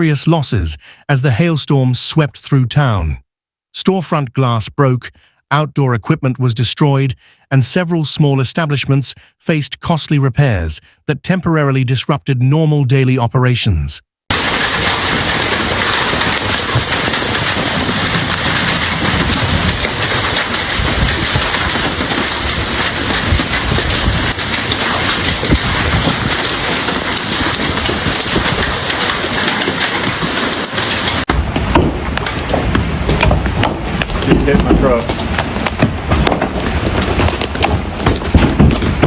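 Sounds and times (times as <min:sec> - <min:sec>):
hail and rain pounding: 0:14.3 - 0:39.0
hailstones knocking: 0:14.3 - 0:39.0.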